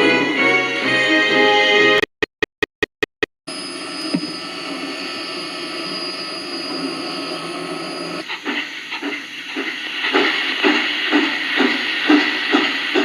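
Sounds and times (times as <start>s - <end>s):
steam hiss: 3.5s - 13.0s
model locomotive chuffing: 4.6s - 13.0s.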